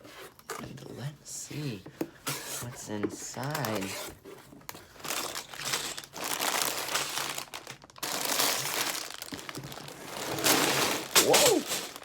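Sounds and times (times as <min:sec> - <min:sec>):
plastic bags crinkling: 0:04.7 - 0:12.0.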